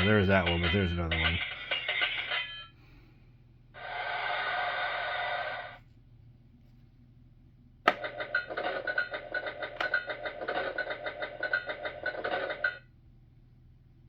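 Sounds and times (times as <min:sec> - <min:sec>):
toy playing electronic sound clips: 0:00.0 - 0:02.7, 0:07.9 - 0:12.8.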